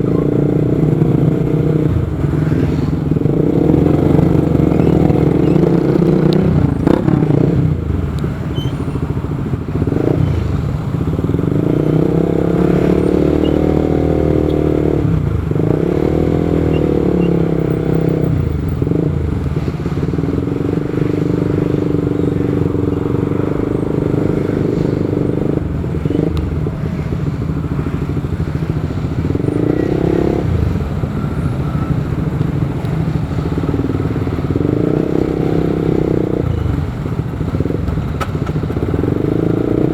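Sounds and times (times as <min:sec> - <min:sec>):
motorcycle engine revving: 0:00.0 - 0:39.9
road and wind rumble: 0:00.0 - 0:39.9.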